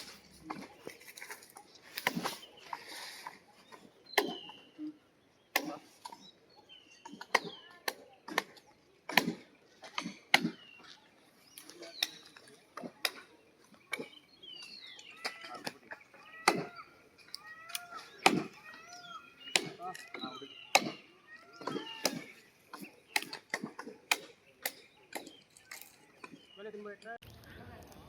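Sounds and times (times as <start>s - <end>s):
machete chopping branches: 0.0s - 2.5s, 4.1s - 4.6s, 5.5s - 6.2s, 7.0s - 10.9s, 13.9s - 16.8s, 17.7s - 18.6s, 19.4s - 26.4s
birds chirping: 0.0s - 28.0s.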